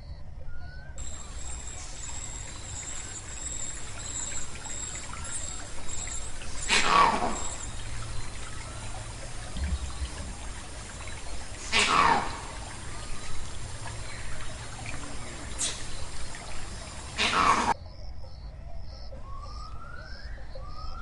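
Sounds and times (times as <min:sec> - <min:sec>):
thin high steady tone: 0:01.0 - 0:11.6
water trickling: 0:01.0 - 0:17.8.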